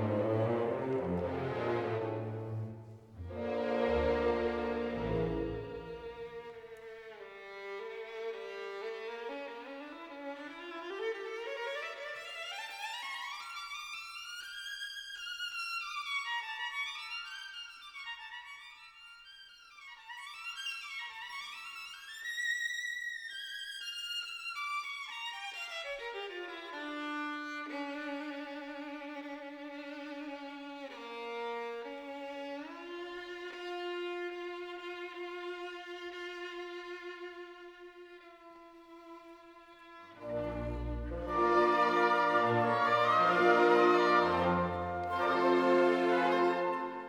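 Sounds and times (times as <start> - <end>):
solo violin: 0.0 - 47.0.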